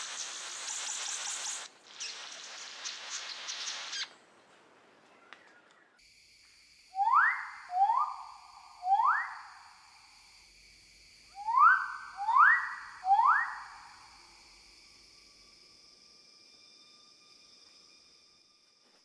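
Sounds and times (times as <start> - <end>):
hissy chatter with chirps: 0.0 - 4.1.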